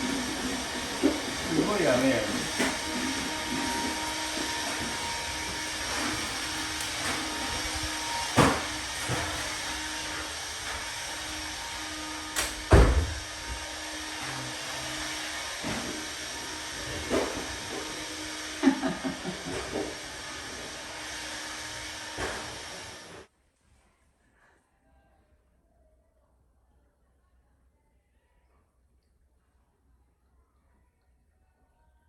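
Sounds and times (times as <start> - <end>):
heavy rain hissing: 0.0 - 8.4.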